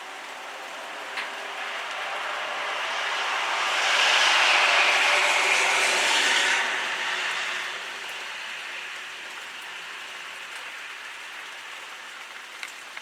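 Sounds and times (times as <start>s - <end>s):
heavy rain pattering: 0.0s - 13.0s
small ticks: 12.2s - 13.0s.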